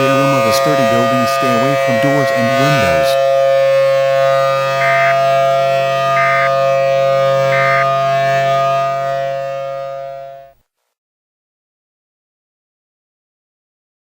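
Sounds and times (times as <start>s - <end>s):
loud multi-tone drone: 0.0s - 10.6s
short digital data bursts: 4.8s - 5.2s, 6.2s - 6.5s, 7.5s - 7.9s.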